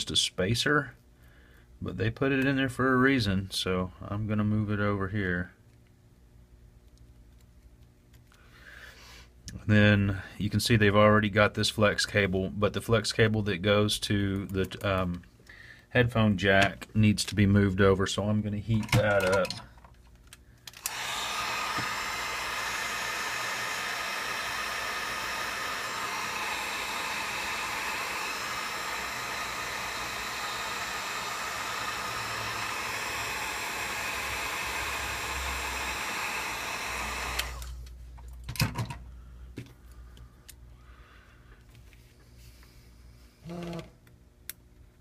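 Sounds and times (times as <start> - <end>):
hot-air blower running: 20.7 - 37.9.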